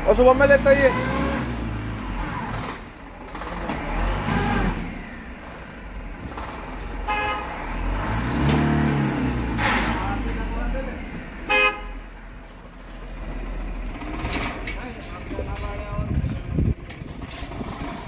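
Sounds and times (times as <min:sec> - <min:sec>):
vehicle engine revving: 0:00.0 - 0:18.0.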